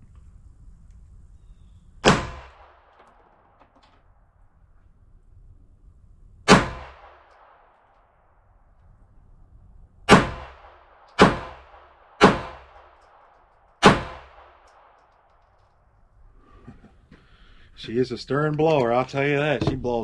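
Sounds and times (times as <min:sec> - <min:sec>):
pistol shots with echoing tail: 0:02.0 - 0:03.6, 0:06.4 - 0:08.1, 0:10.0 - 0:15.2.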